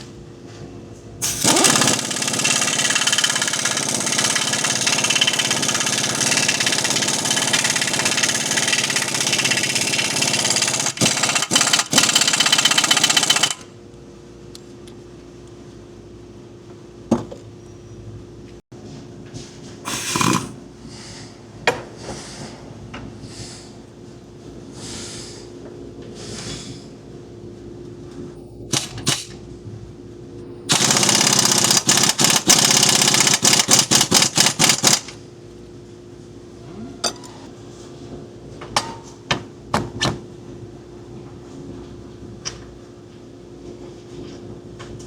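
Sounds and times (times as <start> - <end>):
air impact wrench hammering: 1.2 - 13.6, 19.9 - 20.5, 30.7 - 35.2
short air hisses: 19.9 - 20.6.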